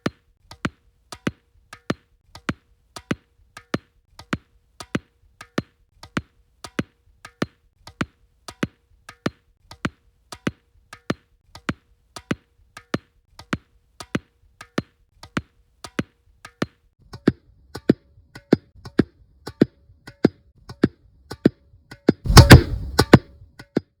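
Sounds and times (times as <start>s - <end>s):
loud jumble of noise: 22.3s - 23.1s
tennis ball bouncing on hard floor: 22.3s - 23.2s.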